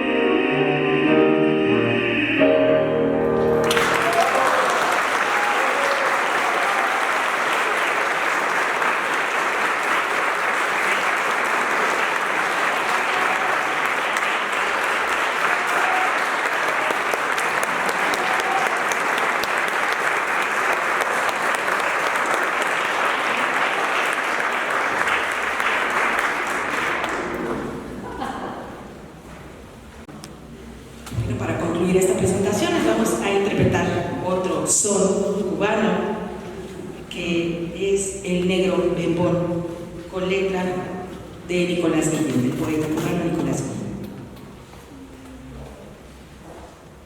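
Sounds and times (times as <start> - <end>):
audience applauding: 3.4 - 28.0.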